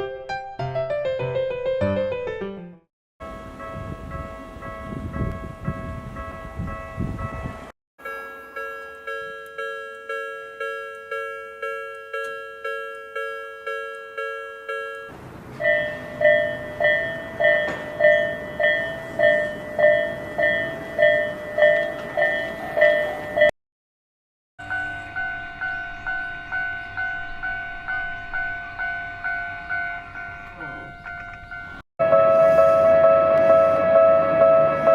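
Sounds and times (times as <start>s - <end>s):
higher-pitched crossing bell: 3.2s - 23.5s, 24.6s - 34.9s
level crossing bell ringing: 3.2s - 23.5s, 24.6s - 34.9s
outdoor background noise: 14.0s - 23.5s.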